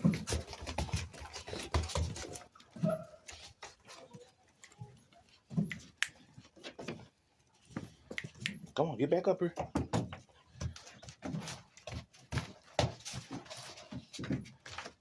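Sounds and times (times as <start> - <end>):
puppy claws pattering: 0.0 - 7.0.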